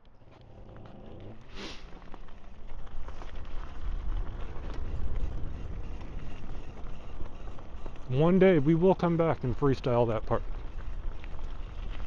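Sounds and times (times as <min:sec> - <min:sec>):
electric dirt bike rumble: 0:00.4 - 0:08.8.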